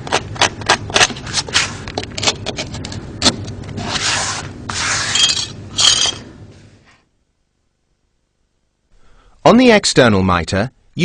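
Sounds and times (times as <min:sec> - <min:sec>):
tool scraping floor seam: 0:03.7 - 0:06.3.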